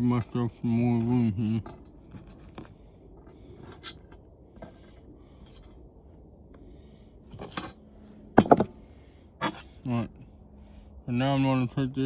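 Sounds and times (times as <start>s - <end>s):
parts clattering: 8.4s - 8.8s.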